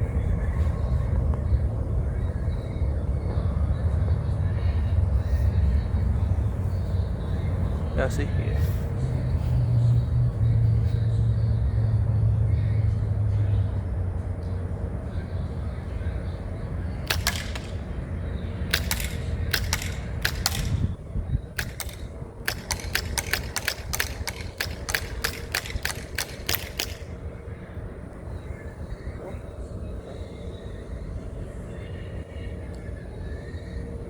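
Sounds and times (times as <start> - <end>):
bb pistol shots: 17.0 - 18.0, 18.7 - 21.0, 21.6 - 27.2.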